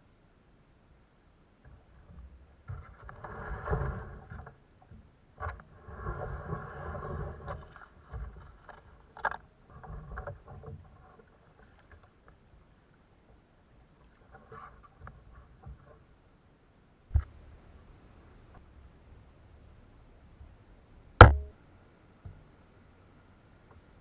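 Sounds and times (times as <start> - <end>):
paddle in water: 1.0 - 24.0
knocks against kayak hull: 21.2 - 21.6.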